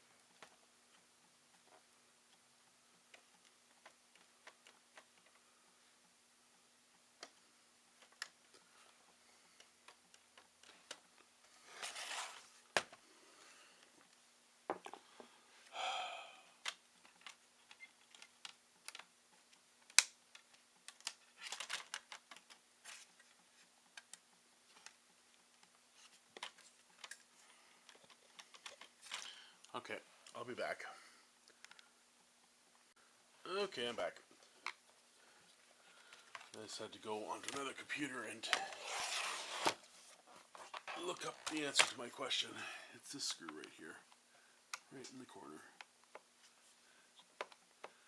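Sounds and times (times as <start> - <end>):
faint steady hum: 0.0 - 48.0
scraping and rustling handling: 8.0 - 14.0, 33.7 - 42.5.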